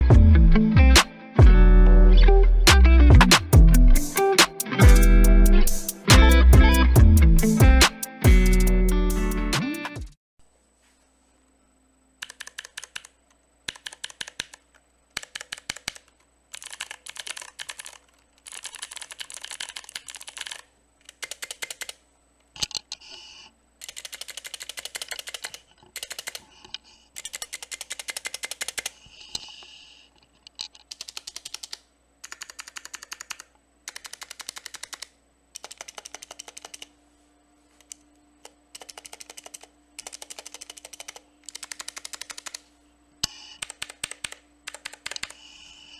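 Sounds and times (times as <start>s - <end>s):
mechanical keyboard key clicks: 12.2s - 13.1s, 30.7s - 36.9s, 38.8s - 42.6s, 43.6s - 45.4s.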